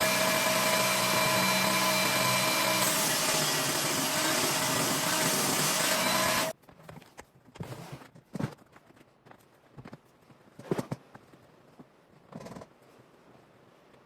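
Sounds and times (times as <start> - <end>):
table saw cutting wood: 0.0 - 6.5.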